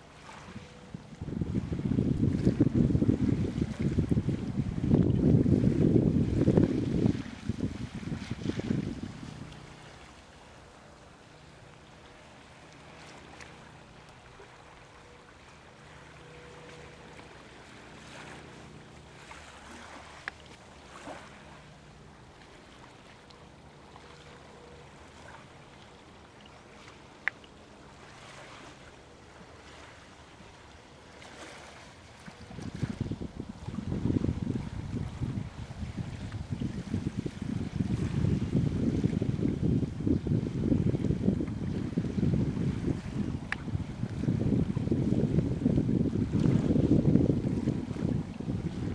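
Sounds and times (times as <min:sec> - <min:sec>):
small waves: 0:00.0 - 0:48.9
wind: 0:00.0 - 0:48.9.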